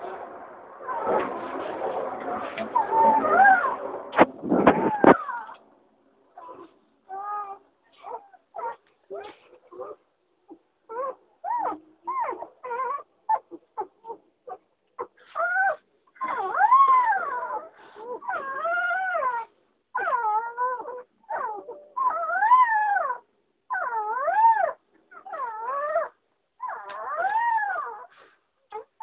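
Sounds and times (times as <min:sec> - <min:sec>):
puppies whining and howling: 0:00.8 - 0:01.6, 0:02.4 - 0:05.6, 0:06.4 - 0:10.0, 0:10.9 - 0:29.0
puppies yelping: 0:02.6 - 0:04.0, 0:10.9 - 0:29.0.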